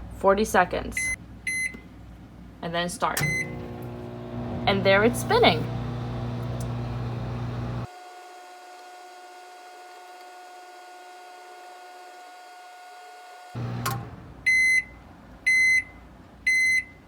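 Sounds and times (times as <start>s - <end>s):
microwave clicking off: 3.2s - 7.9s, 13.6s - 14.3s
microwave oven humming: 3.2s - 7.9s, 13.6s - 14.5s.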